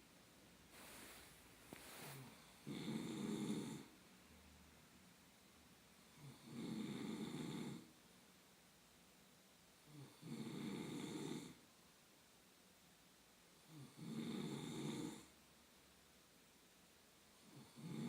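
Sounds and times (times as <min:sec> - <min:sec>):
person snoring: 0:01.8 - 0:03.9, 0:06.2 - 0:07.9, 0:09.9 - 0:11.6, 0:13.7 - 0:15.3, 0:17.5 - 0:18.0.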